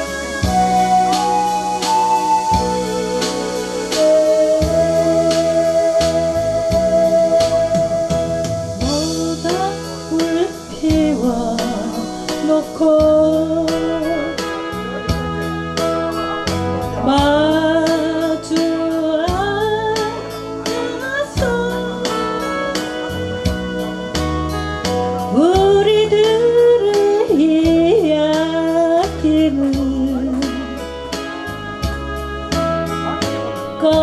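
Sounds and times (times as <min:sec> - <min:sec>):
instrumental accompaniment with beat: 0:00.0 - 0:34.0
person singing with vibrato: 0:08.8 - 0:24.4.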